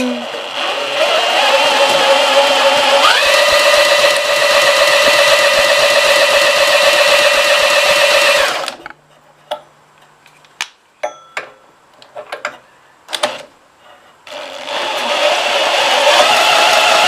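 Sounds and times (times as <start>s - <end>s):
power drill motor whine: 0.0s - 8.8s, 14.3s - 17.0s.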